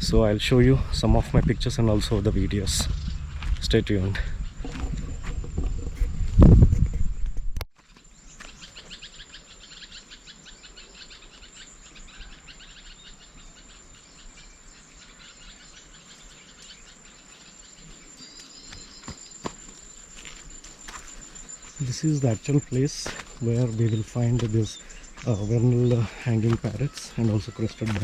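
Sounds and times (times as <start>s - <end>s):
loud rumble: 0.0s - 7.2s
insects trilling: 0.0s - 28.0s
rapid insect chirping: 0.0s - 28.0s.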